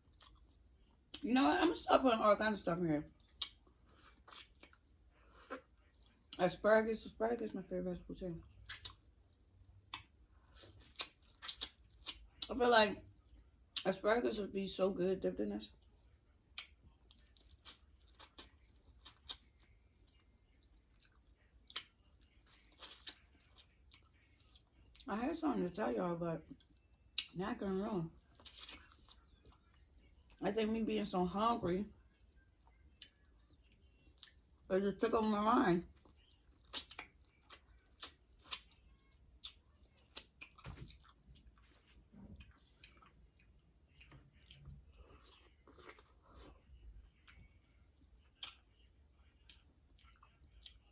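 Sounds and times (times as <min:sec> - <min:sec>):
person chewing food: 0:00.0 - 0:01.2, 0:03.2 - 0:06.4, 0:08.6 - 0:12.5, 0:15.8 - 0:25.0, 0:28.2 - 0:30.4, 0:32.0 - 0:34.6, 0:35.9 - 0:50.9.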